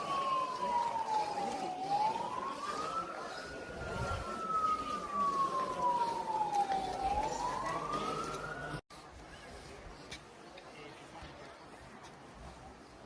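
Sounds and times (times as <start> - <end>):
emergency siren wailing: 0.0 - 8.8.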